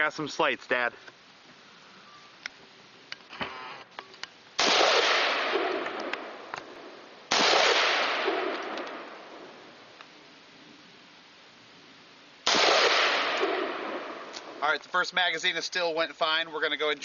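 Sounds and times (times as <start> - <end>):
rifle shots with echo: 4.6 - 9.5, 12.4 - 14.6.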